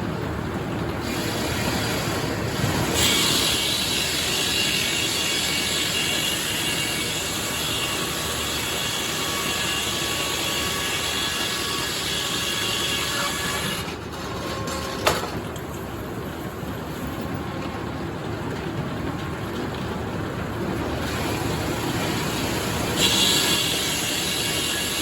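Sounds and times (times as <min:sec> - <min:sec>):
sawmill sawing through wood: 0:01.0 - 0:14.1, 0:21.0 - 0:25.0.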